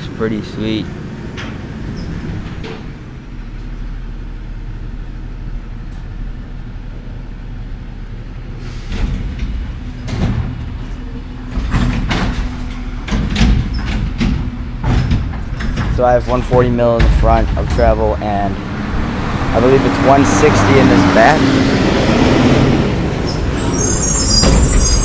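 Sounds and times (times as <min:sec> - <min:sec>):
garbage truck engine rumbling: 0:00.0 - 0:25.0
knocks and clanks: 0:08.9 - 0:20.6, 0:22.1 - 0:25.0.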